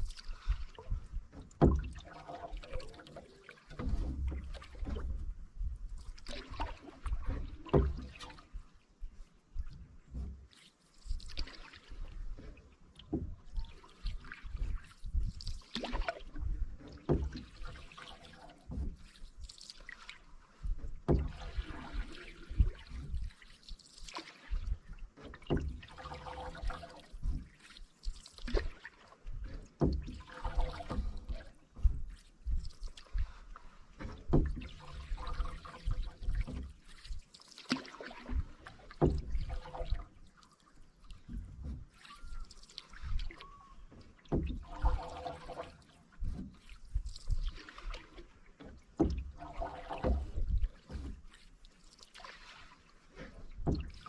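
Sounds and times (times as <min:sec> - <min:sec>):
water dripping off paddle: 0:00.0 - 0:05.0, 0:05.9 - 0:08.6, 0:10.2 - 0:54.0
paddle strokes in water: 0:00.0 - 0:54.0
dull low knocks: 0:00.5 - 0:02.1, 0:03.7 - 0:06.0, 0:07.1 - 0:10.5, 0:12.2 - 0:15.4, 0:16.3 - 0:17.8, 0:18.6 - 0:19.1, 0:20.6 - 0:23.4, 0:24.6 - 0:27.6, 0:29.3 - 0:36.8, 0:38.2 - 0:40.1, 0:41.2 - 0:42.0, 0:43.1 - 0:45.1, 0:48.6 - 0:51.4.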